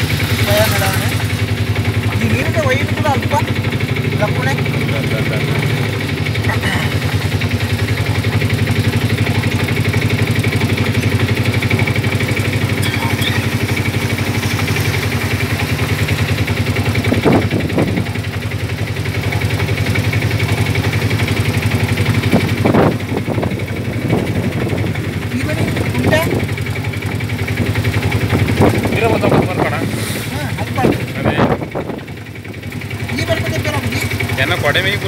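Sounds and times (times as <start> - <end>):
vehicle engine idling: 0.0 - 35.0.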